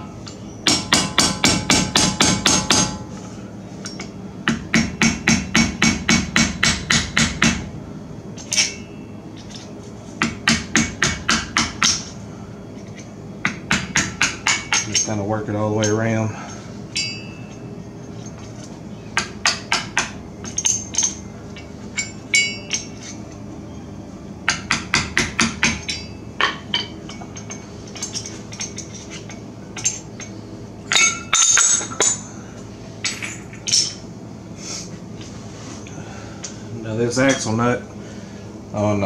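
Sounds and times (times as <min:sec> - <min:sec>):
metal clatter: 0:25.7 - 0:30.3.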